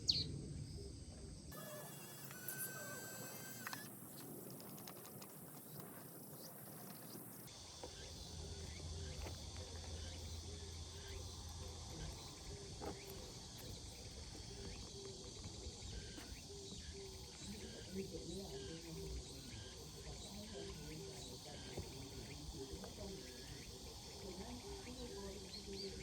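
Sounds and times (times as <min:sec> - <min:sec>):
insects chirping: 0:00.0 - 0:26.0.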